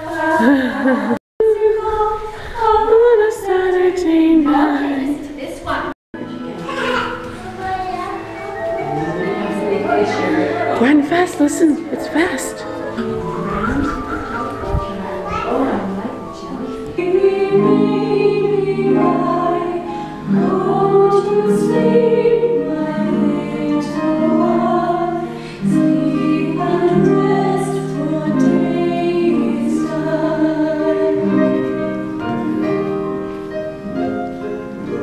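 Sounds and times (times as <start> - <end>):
held instrumental notes: 6.2 - 35.0
group of voices singing: 16.8 - 31.9.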